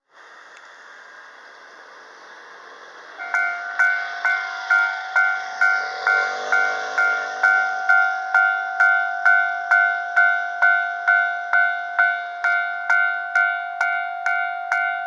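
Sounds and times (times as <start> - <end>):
steady hiss: 0.0 - 15.0
level crossing bell dinging: 3.2 - 15.0.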